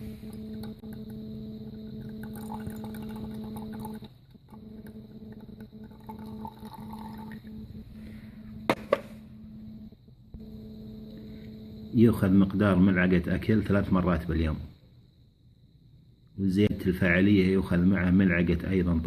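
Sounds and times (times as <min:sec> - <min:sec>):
liquid being poured: 0:00.0 - 0:07.8
steady electrical hum: 0:00.0 - 0:19.0.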